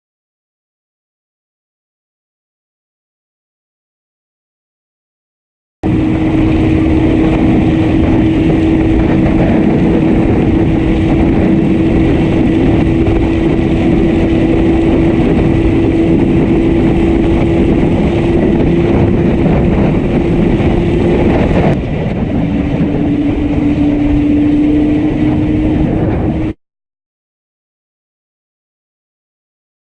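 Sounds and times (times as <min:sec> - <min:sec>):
heavy rush of noise: 0:05.8 - 0:26.6
misfiring motorcycle engine droning: 0:05.8 - 0:26.6.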